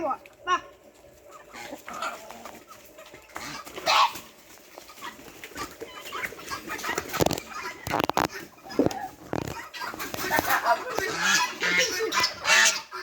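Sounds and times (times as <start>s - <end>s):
poultry clucking and calling: 0.0s - 13.0s.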